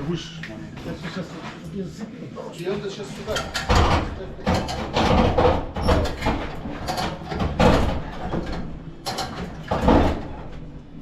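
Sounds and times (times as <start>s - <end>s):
mechanical scraping and clanking: 3.0s - 10.7s.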